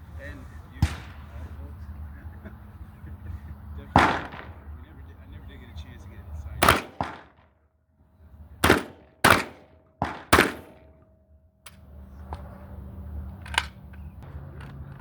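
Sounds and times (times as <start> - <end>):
pistol shots: 0.8 - 1.2, 4.0 - 4.6, 6.6 - 7.5, 8.6 - 11.0.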